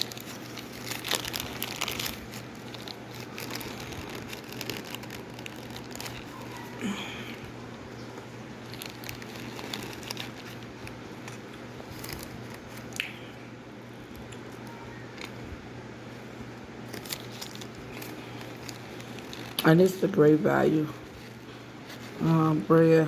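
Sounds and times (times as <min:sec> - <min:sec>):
chewing squeaky crunches: 0:00.0 - 0:07.6, 0:08.2 - 0:13.1, 0:16.8 - 0:19.9.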